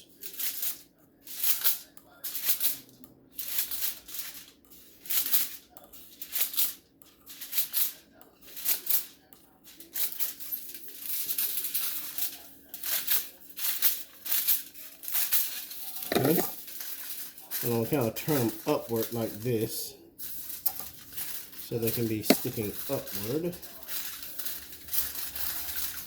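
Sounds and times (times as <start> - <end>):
scissors snipping foil: 9.8 - 19.4, 20.3 - 26.0.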